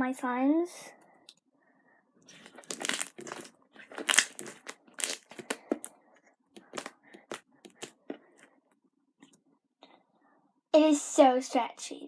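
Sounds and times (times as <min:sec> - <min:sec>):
slime crackling and popping: 0:02.3 - 0:05.9, 0:06.6 - 0:08.0.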